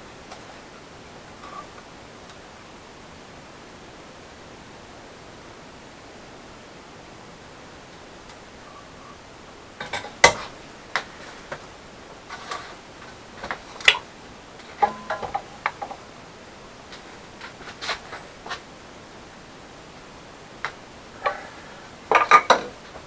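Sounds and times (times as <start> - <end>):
ringing metal clatter: 14.8 - 15.6
metal clinks and knocks: 14.8 - 16.0.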